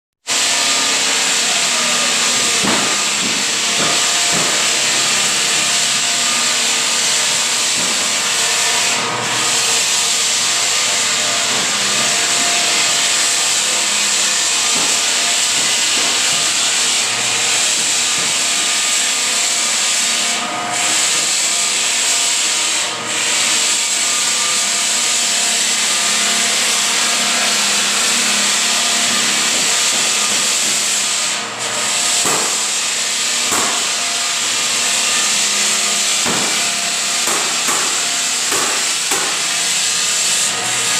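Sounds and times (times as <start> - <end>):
floor sander loud hiss: 0.3 - 40.9.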